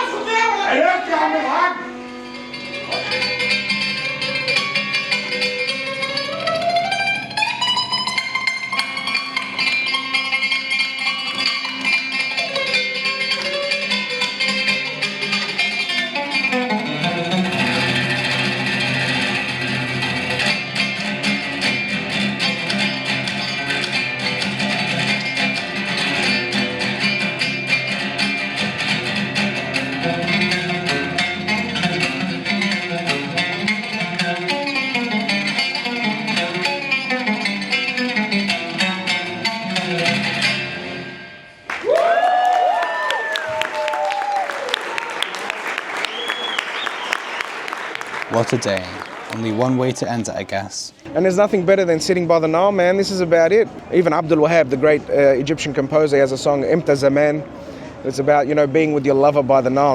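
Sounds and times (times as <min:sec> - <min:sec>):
oud plucked melody: 0:00.0 - 0:41.7.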